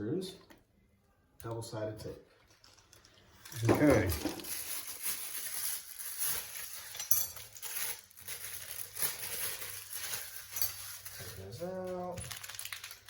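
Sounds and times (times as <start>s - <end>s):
plastic packaging rustling: 2.2s - 13.0s
metal brackets and screws clinking: 5.6s - 8.0s, 10.1s - 11.4s.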